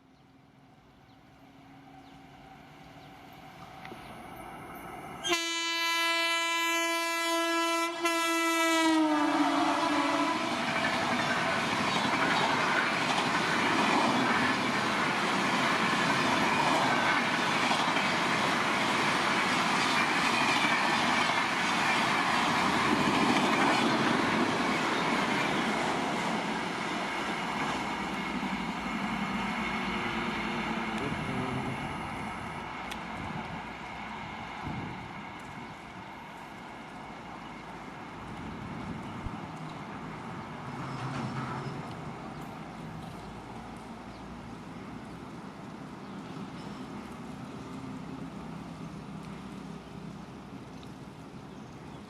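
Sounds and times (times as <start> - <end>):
locomotive horn blast: 5.2 - 10.6
train wheel clatter: 10.6 - 31.6.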